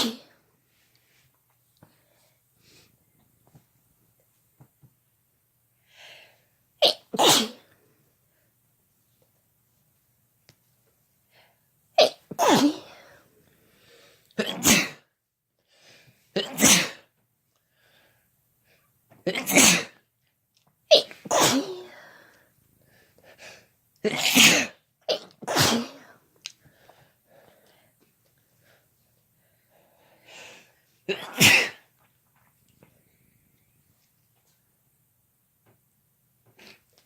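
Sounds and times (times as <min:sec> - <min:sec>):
people sneezing: 0:12.0 - 0:13.0, 0:14.4 - 0:15.0, 0:19.3 - 0:20.0, 0:20.9 - 0:22.0, 0:24.0 - 0:26.2.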